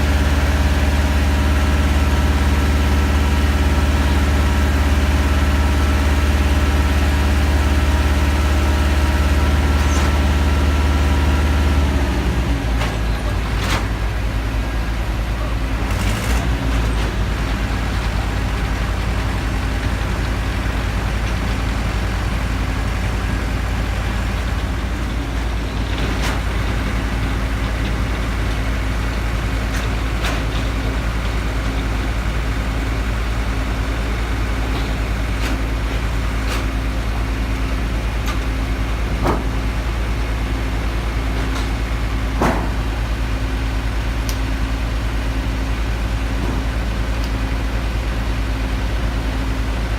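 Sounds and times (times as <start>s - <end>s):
heavy engine rumbling: 0.0s - 49.9s
machinery clunks and clicks: 12.6s - 14.2s, 24.4s - 32.2s, 34.0s - 37.1s, 38.1s - 40.1s, 41.1s - 43.2s, 46.3s - 47.4s.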